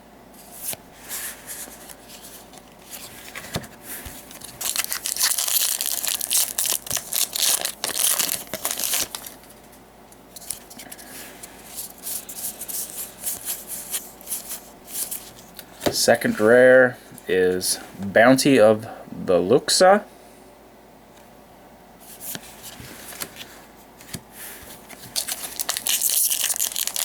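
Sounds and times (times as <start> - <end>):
trading cards rustling: 0.5 - 9.7, 10.4 - 16.5, 22.1 - 27.0
wrapper tearing and crumpling: 4.4 - 9.5, 25.1 - 27.0.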